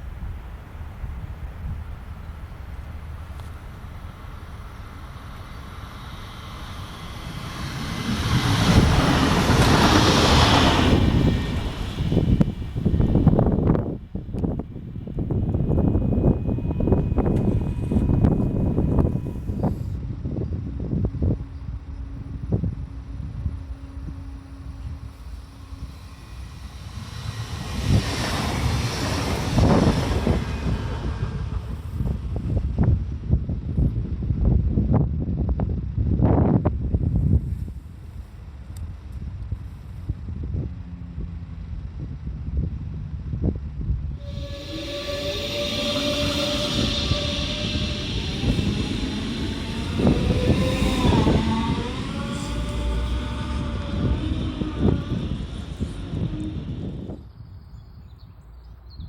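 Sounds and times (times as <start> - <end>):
train passing: 0.0 - 34.3, 44.0 - 58.6
wind buffeting microphone: 6.2 - 38.0, 39.0 - 59.0.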